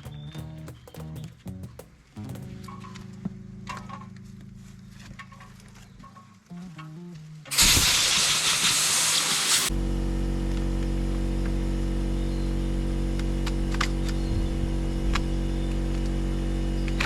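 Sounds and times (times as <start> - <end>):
machine running steadily: 9.6 - 17.0.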